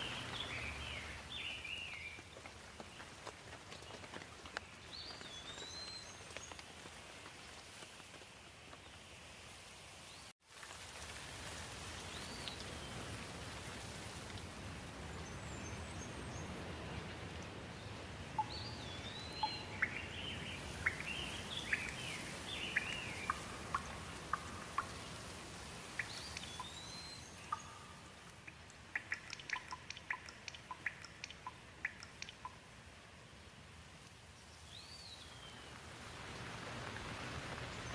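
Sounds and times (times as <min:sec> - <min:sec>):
birds chirping: 0:00.0 - 0:02.4, 0:15.2 - 0:25.2, 0:26.0 - 0:32.6
steady rain hissing: 0:00.0 - 0:37.9.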